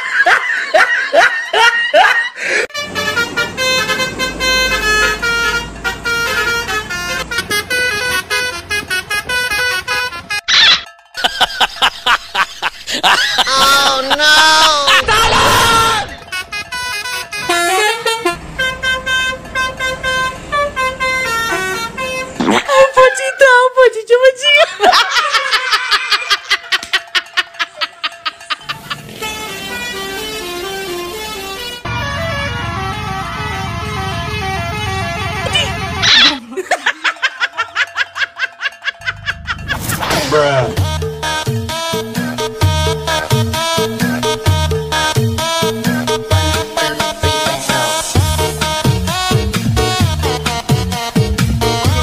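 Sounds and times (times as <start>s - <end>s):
multi-tone musical bus horn: 2.5s - 10.7s, 13.6s - 23.0s, 28.7s - 36.4s, 40.2s - 52.0s.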